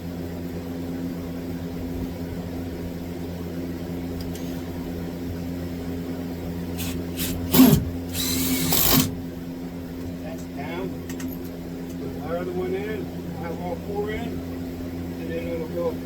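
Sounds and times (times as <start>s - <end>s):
steady low hum: 0.0s - 16.0s
power drill driving a screw: 6.8s - 9.2s.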